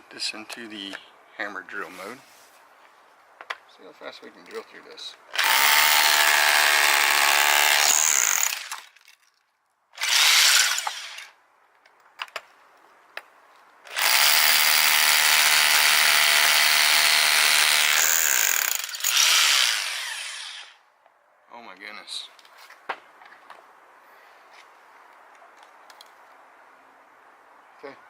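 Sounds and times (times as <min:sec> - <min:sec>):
hammer drill drilling: 0:05.4 - 0:08.8, 0:10.0 - 0:11.3, 0:13.9 - 0:20.8.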